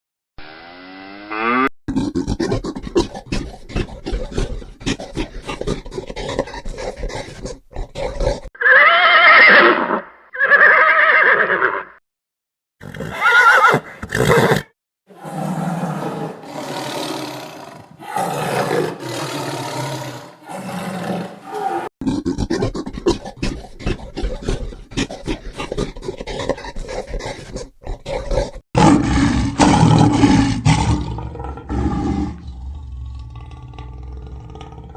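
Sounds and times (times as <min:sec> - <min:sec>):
horse neighing: 0:08.6 - 0:12.0, 0:12.8 - 0:17.4, 0:18.0 - 0:21.9.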